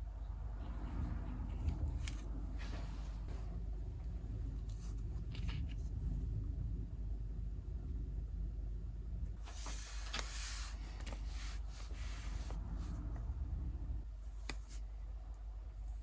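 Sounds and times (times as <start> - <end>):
steady low hum: 0.0 - 16.0
soft scraping and rubbing: 0.6 - 6.3, 9.4 - 13.4.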